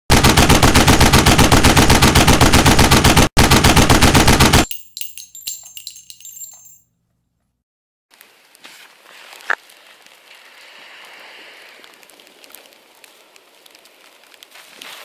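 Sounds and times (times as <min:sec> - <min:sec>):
rapid loud bangs: 0:00.1 - 0:04.7
faint scattered crackles: 0:12.0 - 0:15.0.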